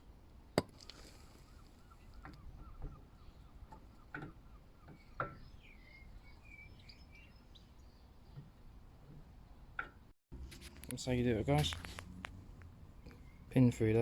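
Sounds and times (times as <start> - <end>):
bird chirping: 1.4 - 8.5, 12.0 - 14.0.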